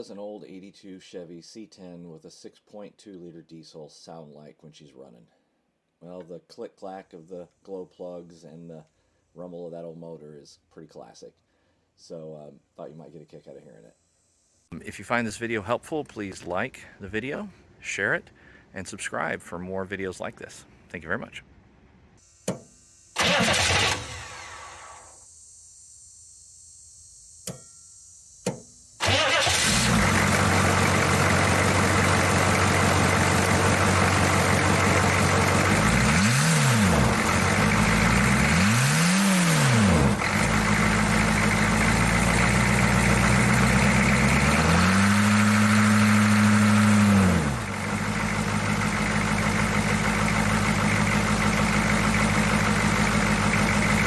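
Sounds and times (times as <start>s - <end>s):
diesel engine starting and revving: 23.2s - 25.2s, 29.0s - 54.0s.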